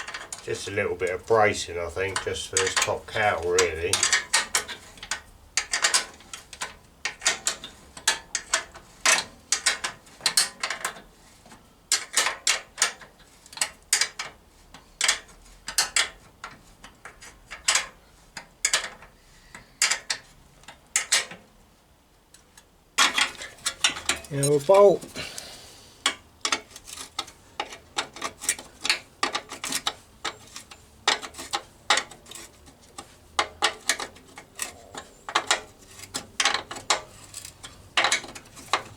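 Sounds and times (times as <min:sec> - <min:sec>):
rustle of handling: 0:23.2 - 0:38.9.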